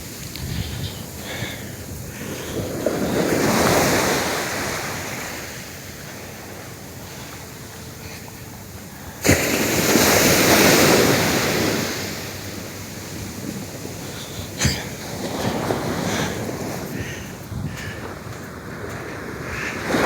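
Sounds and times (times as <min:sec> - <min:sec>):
wind on microphone: 0:00.0 - 0:04.1, 0:13.1 - 0:20.0
wave crashing on beach: 0:09.0 - 0:20.0
white water rushing: 0:09.2 - 0:20.0.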